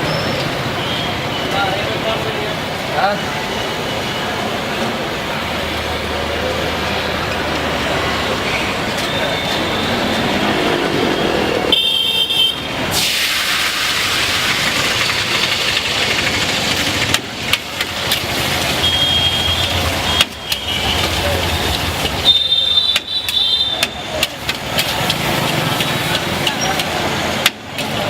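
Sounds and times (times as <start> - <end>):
vehicle engines passing: 0.0 - 28.0.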